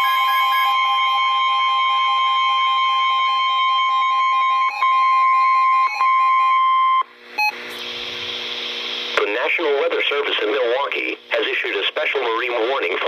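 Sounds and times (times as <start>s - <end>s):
steady warning alarm tone: 0.0s - 7.8s.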